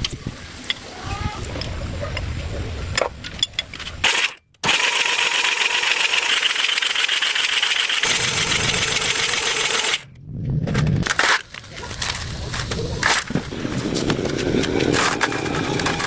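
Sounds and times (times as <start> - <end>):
small motorised tool whirring: 4.0 - 10.1.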